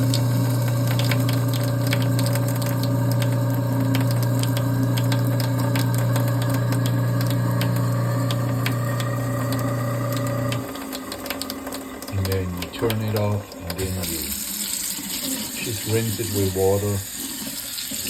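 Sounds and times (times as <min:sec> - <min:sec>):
garbage disposal motor humming: 0:00.0 - 0:18.0
scattered clicks: 0:04.0 - 0:13.9.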